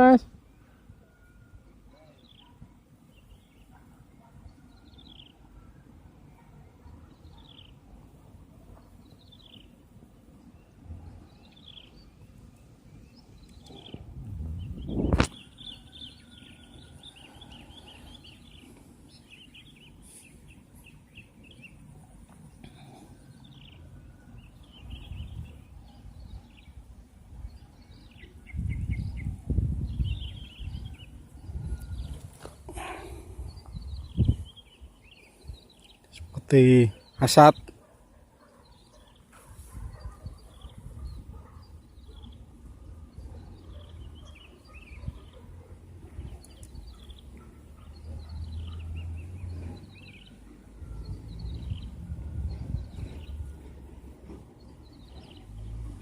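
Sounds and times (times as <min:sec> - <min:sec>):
small birds chirping: 0:01.9 - 0:56.0
low rumbling background noise: 0:07.8 - 0:37.0
steady low rumble: 0:12.6 - 0:15.8.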